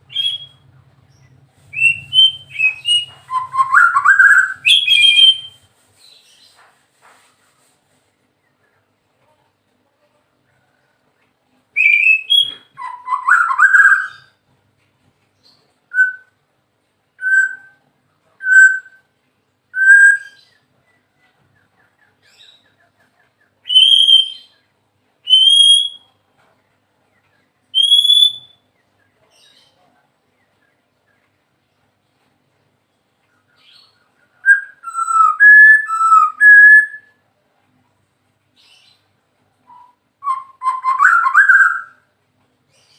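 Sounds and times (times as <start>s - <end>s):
bird singing whistled notes: 0.1s - 0.6s, 1.7s - 5.7s, 11.8s - 14.4s, 15.9s - 16.4s, 17.2s - 17.8s, 18.4s - 19.0s, 19.7s - 20.6s, 23.7s - 24.5s, 25.2s - 26.1s, 27.7s - 28.7s, 33.6s - 37.2s, 39.7s - 42.0s.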